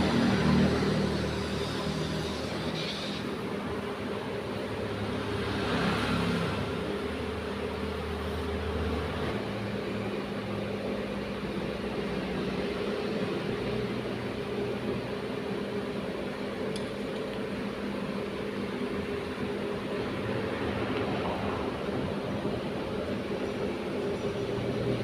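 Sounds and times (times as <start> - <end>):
welding arc hissing: 0.0 - 3.4.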